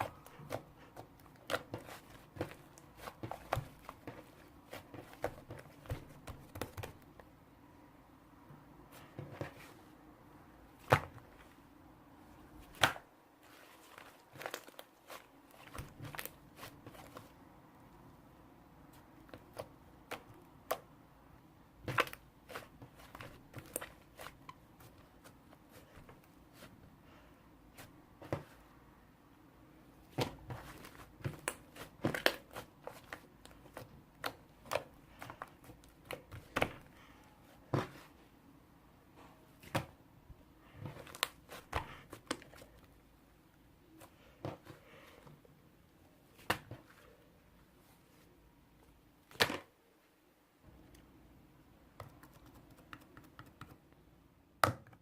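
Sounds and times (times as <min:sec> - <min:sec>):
crinkling: 0:12.6 - 0:17.4
sharp clicks and taps: 0:52.0 - 0:53.8.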